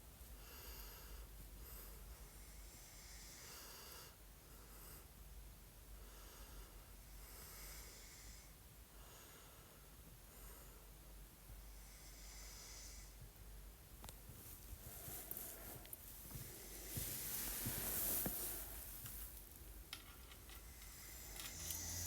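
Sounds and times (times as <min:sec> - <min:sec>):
faint airy breaths: 0:00.2 - 0:22.0
boy snoring softly: 0:11.7 - 0:13.2, 0:20.8 - 0:22.0.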